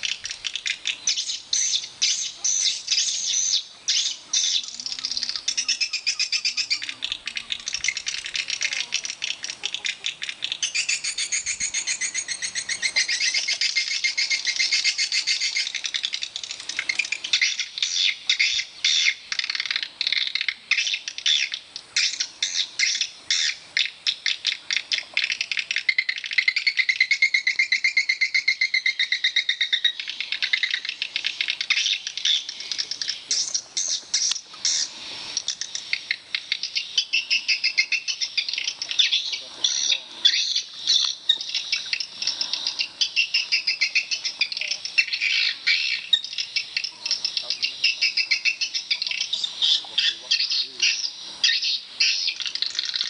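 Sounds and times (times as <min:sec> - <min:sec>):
swiftlets chirping: 0:04.1 - 0:19.8.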